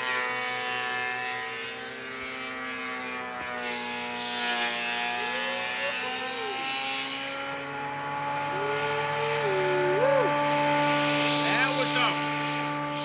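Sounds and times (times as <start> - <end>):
thickness planer motor whine: 0.2 - 13.0.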